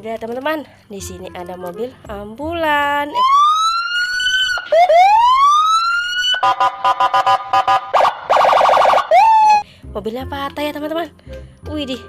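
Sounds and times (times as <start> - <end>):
toy ambulance electronic siren: 3.2 - 9.6.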